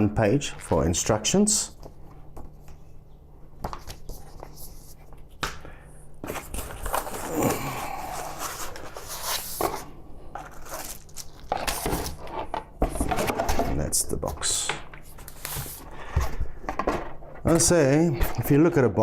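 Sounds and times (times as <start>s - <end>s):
packaging scraping and rustling: 6.2s - 13.8s.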